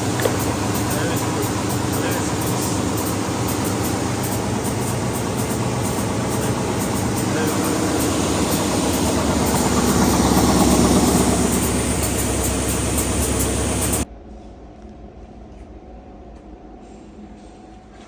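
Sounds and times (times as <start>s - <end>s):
belt sanding machine running: 0.0s - 14.0s.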